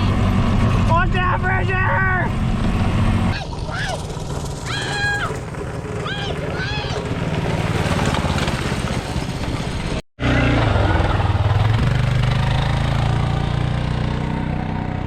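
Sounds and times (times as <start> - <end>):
golf cart engine humming: 0.0 - 10.0.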